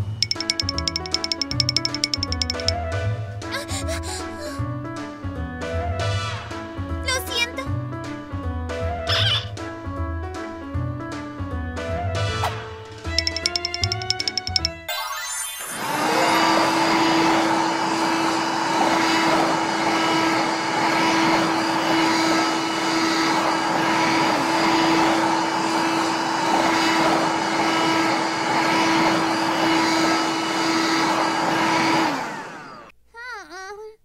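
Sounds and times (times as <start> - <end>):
toy vacuum cleaner whirring: 0.2 - 2.4, 13.2 - 14.6, 15.6 - 32.9.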